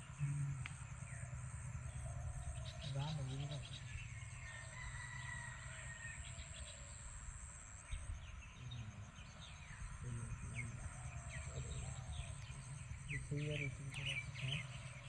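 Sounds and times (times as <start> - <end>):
high insect drone: 0.0 - 15.0
bird chirps: 7.8 - 15.0.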